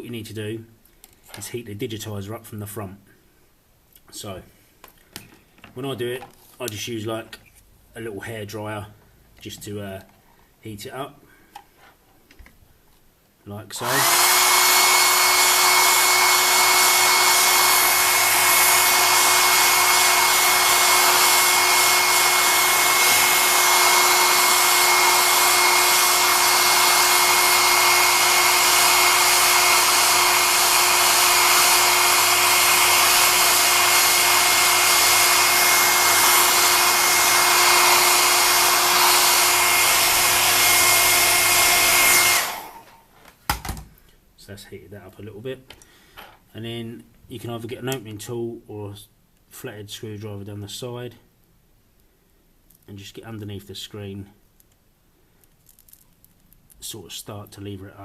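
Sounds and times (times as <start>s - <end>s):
hair dryer running: 13.8s - 43.8s.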